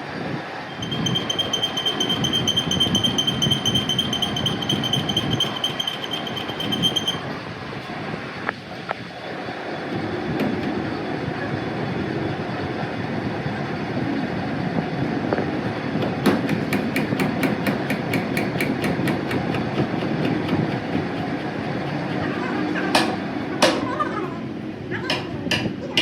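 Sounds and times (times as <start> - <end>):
rapid hammer blows on metal: 16.2 - 22.3.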